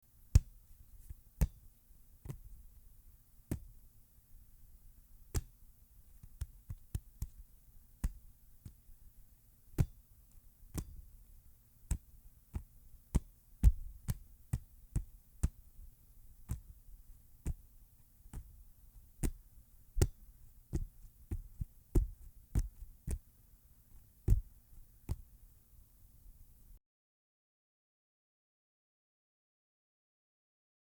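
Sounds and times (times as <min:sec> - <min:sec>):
faint low hum: 0:00.0 - 0:26.8
hand slapping a football: 0:00.3 - 0:02.6, 0:03.5 - 0:03.8, 0:05.3 - 0:05.6, 0:06.2 - 0:08.8, 0:09.8 - 0:10.0, 0:10.7 - 0:11.1, 0:11.9 - 0:15.7, 0:16.4 - 0:16.8, 0:17.4 - 0:17.6, 0:18.3 - 0:18.6, 0:19.2 - 0:23.3, 0:24.3 - 0:25.4.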